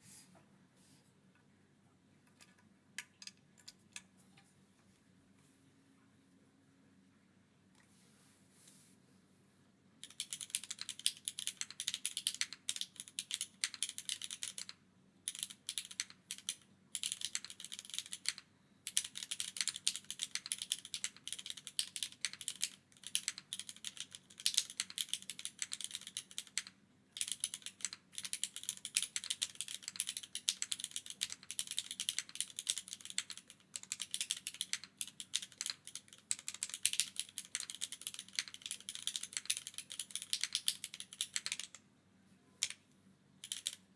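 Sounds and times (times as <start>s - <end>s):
mechanical keyboard typing: 10.0s - 41.8s, 42.6s - 42.8s, 43.4s - 43.9s.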